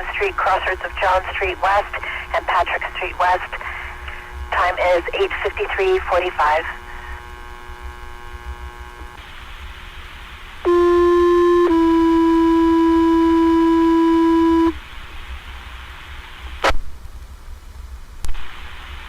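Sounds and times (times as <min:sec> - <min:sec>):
radio hiss: 0:00.0 - 0:16.8, 0:18.3 - 0:19.0.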